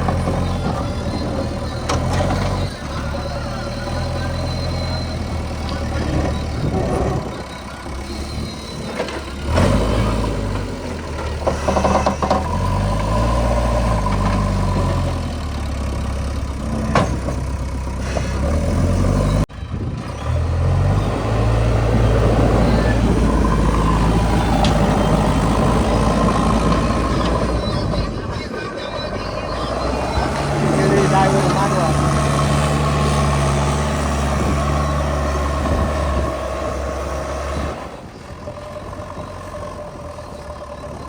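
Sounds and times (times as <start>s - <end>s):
diesel engine revving: 0.0s - 41.0s.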